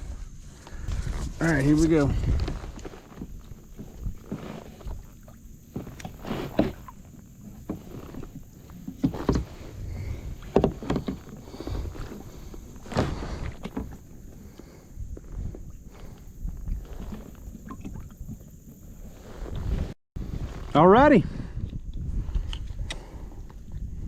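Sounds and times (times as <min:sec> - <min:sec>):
low rumbling handling noise: 0:00.0 - 0:20.8
knocks against kayak: 0:10.4 - 0:11.3.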